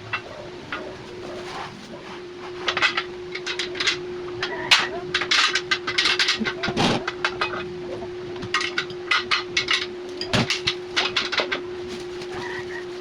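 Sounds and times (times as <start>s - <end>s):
steady hum: 0.0s - 13.0s
steel parts clinking: 2.6s - 7.7s, 8.4s - 11.6s.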